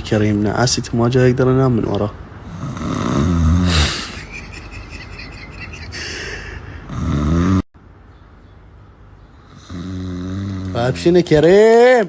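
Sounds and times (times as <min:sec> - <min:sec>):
person snoring: 0:02.5 - 0:04.2, 0:06.0 - 0:07.7, 0:09.6 - 0:10.8.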